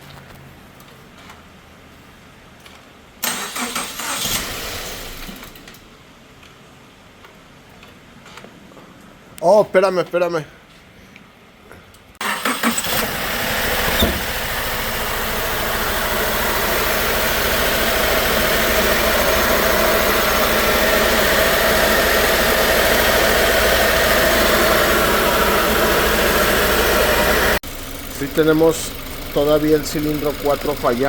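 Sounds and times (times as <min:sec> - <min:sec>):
car engine cranking and running: 0:02.6 - 0:05.9, 0:12.2 - 0:31.0
engine knock: 0:17.5 - 0:31.0.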